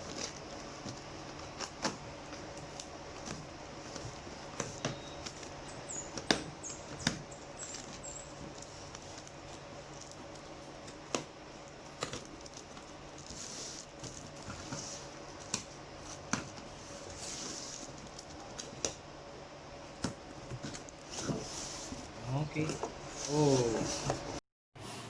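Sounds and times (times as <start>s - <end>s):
packaging rustling: 0.0s - 19.0s.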